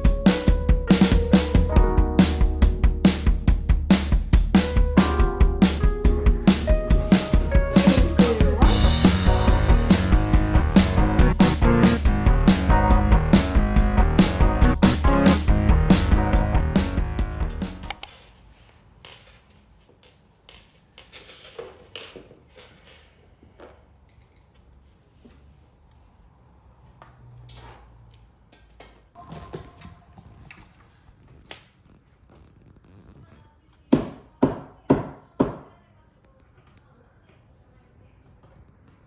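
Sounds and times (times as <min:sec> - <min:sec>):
light taps and clicks of handling: 0:17.9 - 0:18.1.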